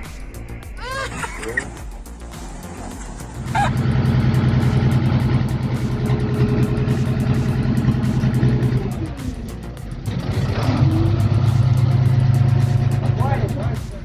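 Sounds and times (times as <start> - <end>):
heavy machine engine running: 2.5 - 13.3.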